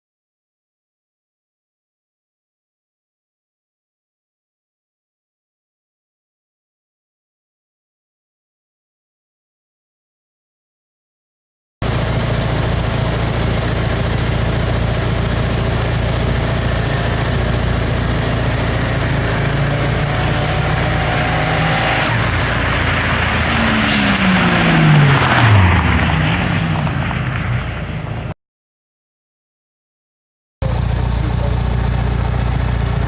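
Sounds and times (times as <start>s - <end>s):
car engines accelerating hard: 11.8s - 28.3s, 30.6s - 33.0s
cars passing by: 18.5s - 28.3s.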